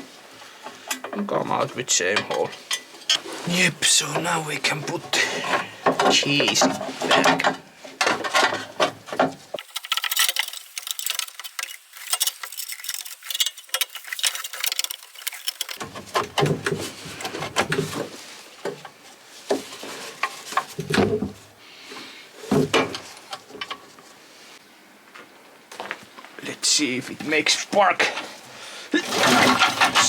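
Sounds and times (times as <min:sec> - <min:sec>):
tools and small parts rattling: 0:05.1 - 0:21.4, 0:29.0 - 0:30.0.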